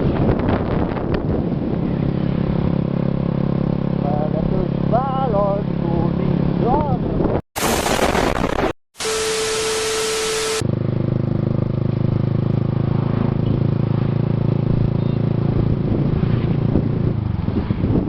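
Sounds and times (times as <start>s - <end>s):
motorcycle engine running: 0.8s - 6.9s, 9.0s - 18.0s
loud hiss: 7.6s - 10.6s
steady tone: 7.6s - 10.6s.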